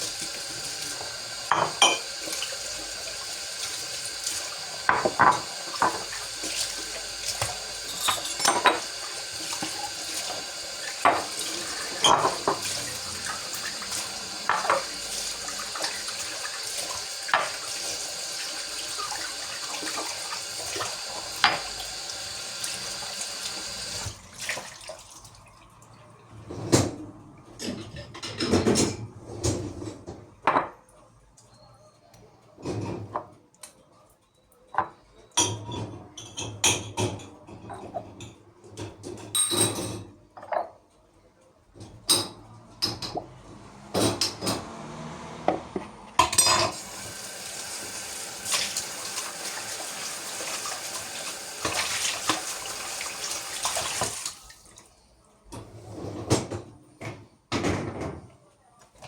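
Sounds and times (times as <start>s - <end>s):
water running: 0.0s - 26.3s, 42.2s - 55.0s
dishes and cutlery clinking: 0.8s - 2.6s, 4.8s - 16.1s, 26.5s - 30.8s, 34.6s - 40.8s, 46.2s - 46.8s.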